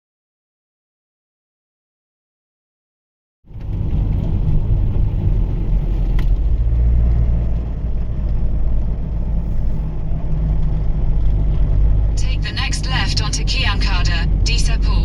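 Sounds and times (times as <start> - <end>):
vehicle engine and road noise: 3.5 - 15.0.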